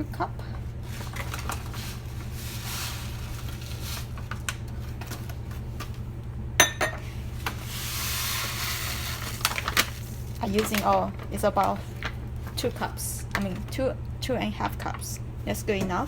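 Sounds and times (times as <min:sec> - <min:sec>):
steady low hum: 0:00.0 - 0:16.0
cup clacking against pot: 0:06.6 - 0:07.0
grain pouring into pot: 0:07.6 - 0:10.9.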